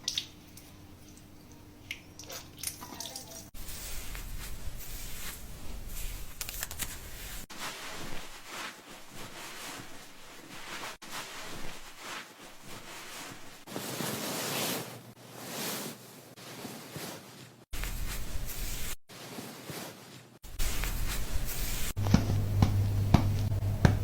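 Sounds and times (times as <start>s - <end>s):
hands scrubbing wet hair: 2.2s - 24.0s.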